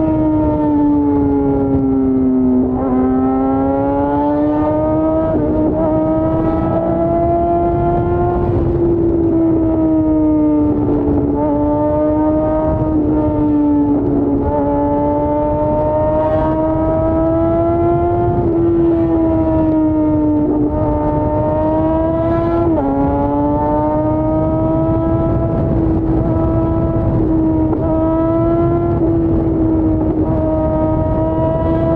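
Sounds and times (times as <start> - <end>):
motorcycle engine at high revs: 0.0 - 31.9
wind and road noise: 0.0 - 31.9.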